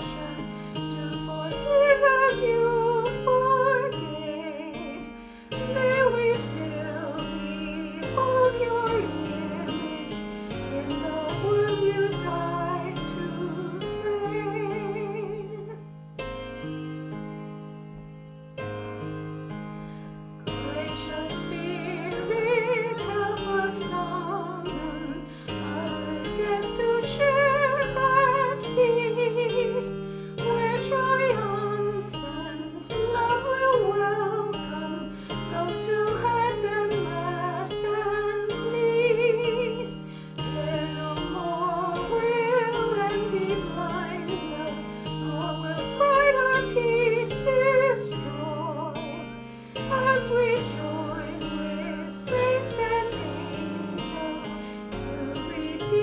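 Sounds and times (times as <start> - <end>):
piano accompaniment: 0.0 - 56.0
person singing with vibrato: 20.5 - 56.0.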